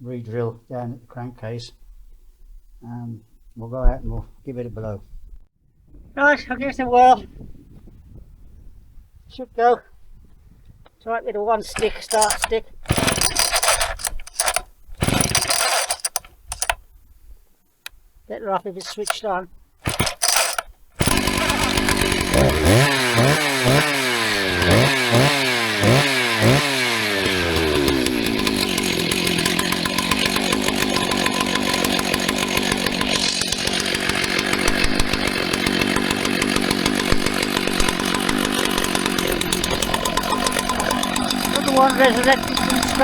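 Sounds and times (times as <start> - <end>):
chainsaw revving and running: 11.8 - 16.8, 19.8 - 43.0.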